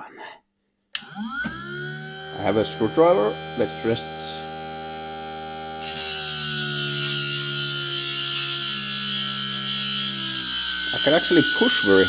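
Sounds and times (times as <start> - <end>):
bench grinder motor humming: 1.0 - 12.0
metal grinding hiss: 5.8 - 12.0.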